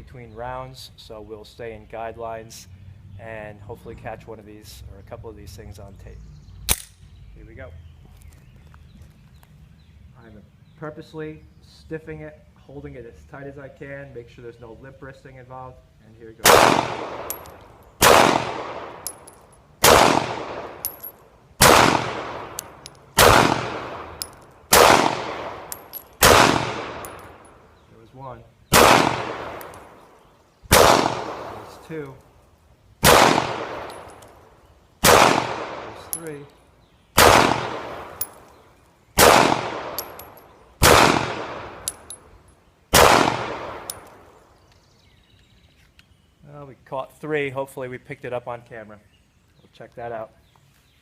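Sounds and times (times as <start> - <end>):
pistol shots echoing: 16.4 - 27.6, 28.7 - 30.1, 30.7 - 31.8, 33.0 - 36.2, 37.2 - 38.4, 39.2 - 42.2, 42.9 - 44.3
metallic clinks of falling brass: 17.3 - 17.8, 19.0 - 19.6, 20.8 - 21.2, 24.2 - 24.6, 25.7 - 26.2, 27.0 - 27.6, 33.8 - 34.4, 39.9 - 40.6, 41.8 - 42.6.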